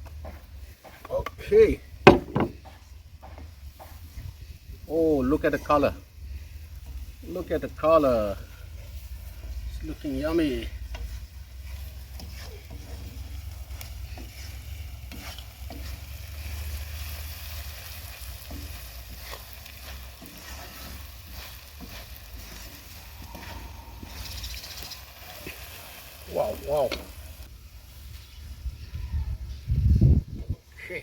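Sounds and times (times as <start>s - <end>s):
grasshoppers sizzling in hot oil: 2.8s - 28.2s
utensil stirring clicks and scrapes: 8.6s - 25.6s.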